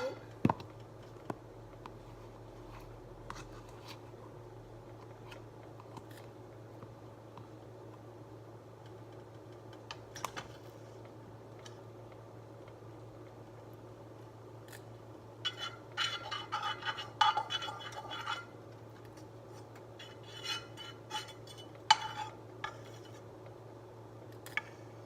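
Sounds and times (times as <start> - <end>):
steady low hum: 0.0 - 25.0
utensil scraping a skillet: 15.4 - 23.3.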